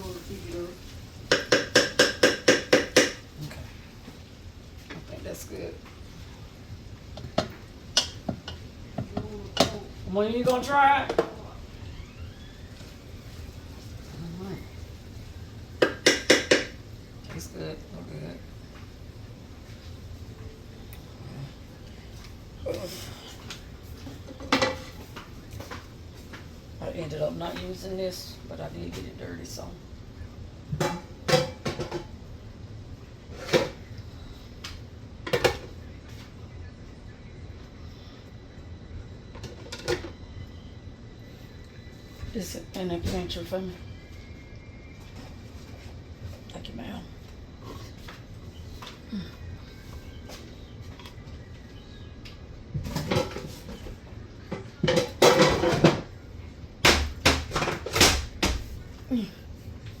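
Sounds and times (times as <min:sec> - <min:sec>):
dishes and utensils clattering: 0:24.0 - 0:25.8, 0:30.7 - 0:32.2, 0:52.8 - 0:53.9, 0:54.5 - 0:56.1.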